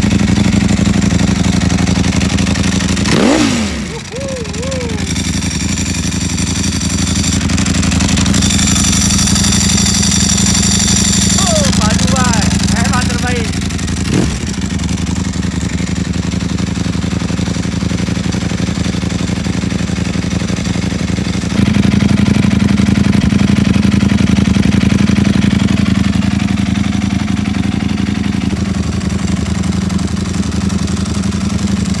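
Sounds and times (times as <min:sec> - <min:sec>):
motorcycle engine idling: 0:00.0 - 0:32.0.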